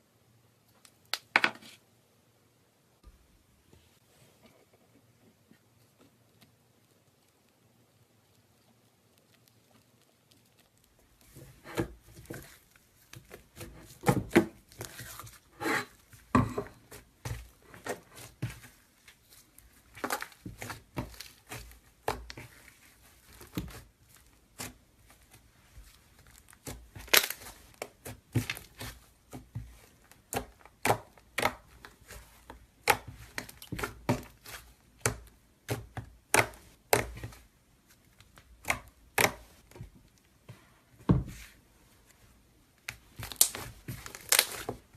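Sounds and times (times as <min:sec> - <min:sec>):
slime crackling and popping: 0:09.1 - 0:37.3, 0:42.9 - 0:44.9.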